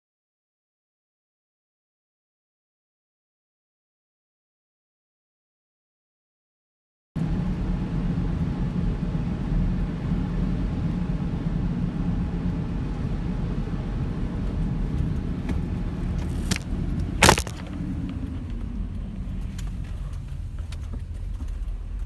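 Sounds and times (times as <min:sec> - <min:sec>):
car driving rumble: 0:11.7 - 0:22.0.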